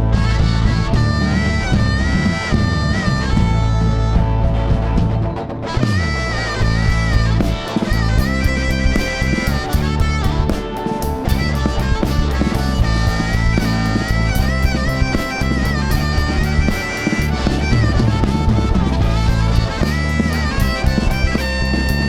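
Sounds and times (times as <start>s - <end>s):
bending lead melody: 0.0s - 22.0s
rock band playing: 0.0s - 22.0s.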